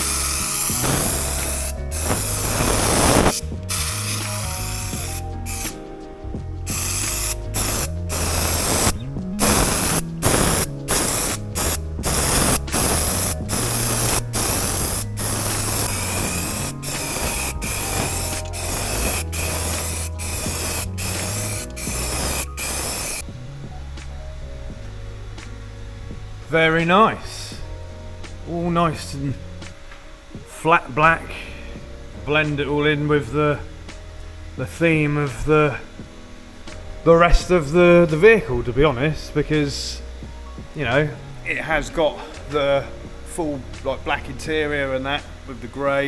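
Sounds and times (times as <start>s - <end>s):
spray gun hissing: 0.0s - 23.2s.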